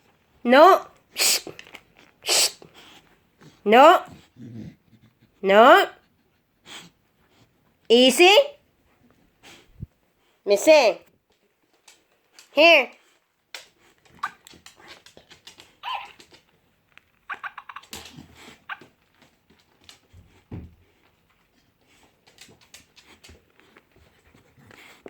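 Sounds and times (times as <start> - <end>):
dog whining and whimpering: 15.8 - 16.3.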